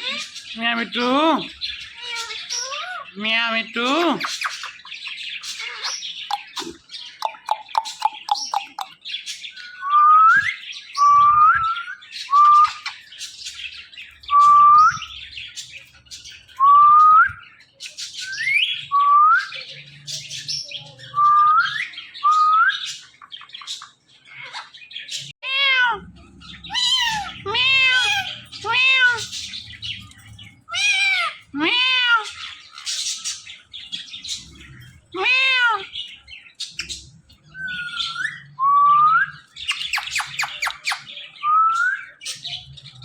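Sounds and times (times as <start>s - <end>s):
parakeet chattering: 0.0s - 9.0s, 26.6s - 29.7s
parakeet squawky calls: 0.0s - 9.0s, 25.5s - 29.8s, 30.6s - 33.5s
parakeet mimicking cat meow: 2.0s - 3.2s, 25.4s - 29.4s, 30.7s - 32.5s, 35.1s - 36.0s.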